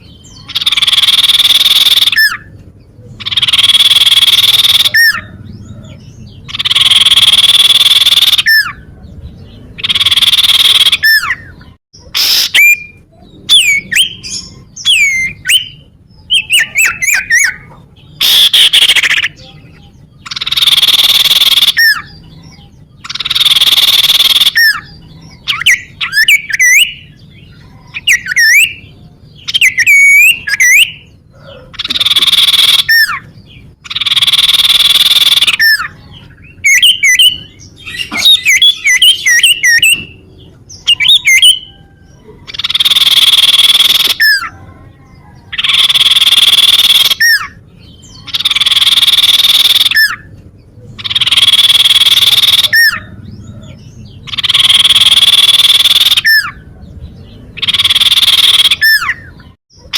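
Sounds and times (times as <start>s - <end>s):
harsh buzzy birdsong phrases: 0.0s - 59.9s
whistled bird notes: 9.8s - 50.3s, 57.3s - 59.9s.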